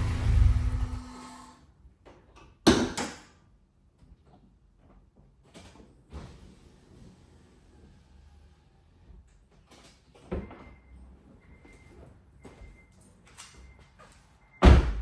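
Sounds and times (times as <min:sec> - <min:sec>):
car engine idling: 0:00.0 - 0:01.3.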